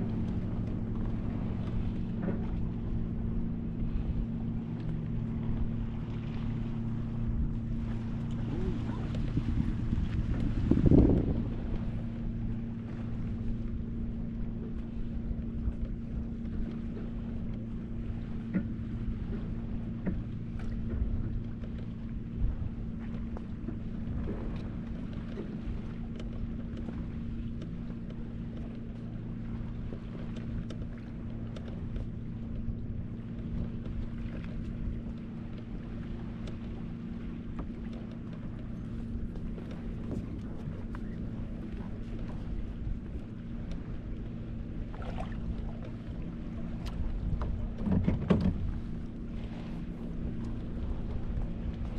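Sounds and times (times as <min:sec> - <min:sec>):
low motor hum: 0:00.0 - 0:51.9
low rumble: 0:00.0 - 0:51.9
wind noise on microphone: 0:07.3 - 0:12.1
faint click: 0:46.8 - 0:47.0.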